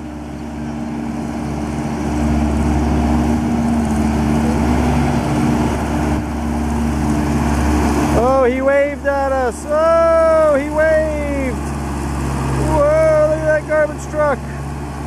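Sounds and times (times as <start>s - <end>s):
garbage truck engine: 0.0s - 15.0s.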